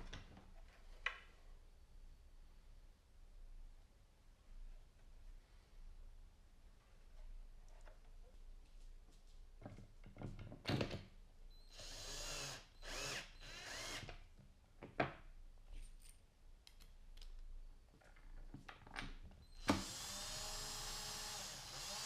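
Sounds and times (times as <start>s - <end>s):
power drill running: 11.7s - 14.1s, 19.6s - 22.0s.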